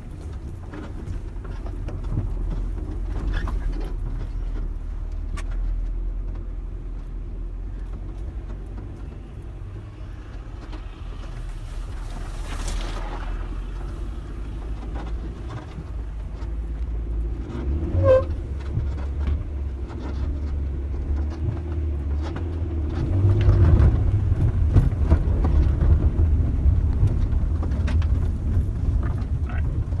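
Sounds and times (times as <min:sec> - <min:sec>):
body and suspension rattles: 0:00.0 - 0:30.0
car engine pulling: 0:00.0 - 0:30.0
short squeak: 0:17.8 - 0:18.5.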